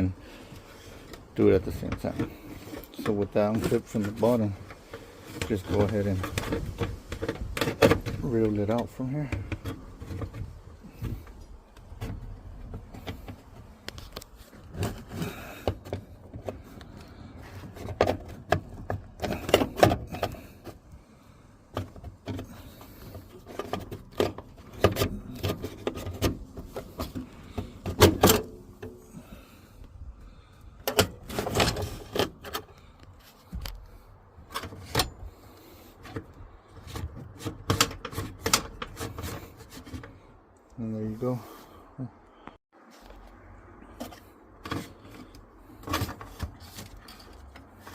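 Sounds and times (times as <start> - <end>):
cable clicks knocks and rubbing: 0.5 - 21.0, 21.6 - 29.2, 36.0 - 40.2.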